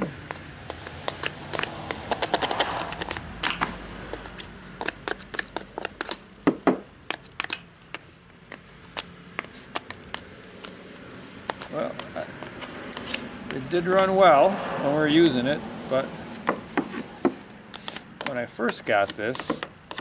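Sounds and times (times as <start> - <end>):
small clicks and taps of tools: 17.7 - 20.0.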